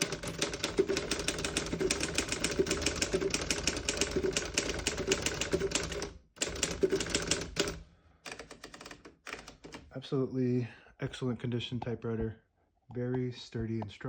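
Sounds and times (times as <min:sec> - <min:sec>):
manual typewriter typing: 0:00.0 - 0:09.8.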